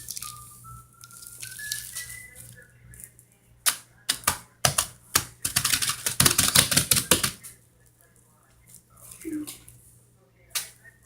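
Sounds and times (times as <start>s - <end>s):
plastic bag crinkling: 0.0s - 3.1s.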